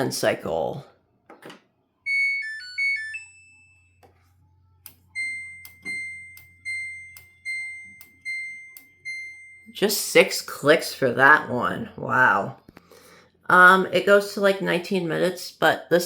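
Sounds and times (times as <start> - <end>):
electronic tone jingle: 2.1 - 4.0, 5.1 - 9.8
short beeps: 5.1 - 9.8.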